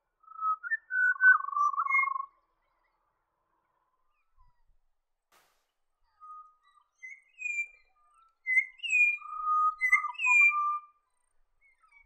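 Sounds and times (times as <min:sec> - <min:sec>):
bird singing whistled notes: 0:00.2 - 0:03.0, 0:06.0 - 0:12.0.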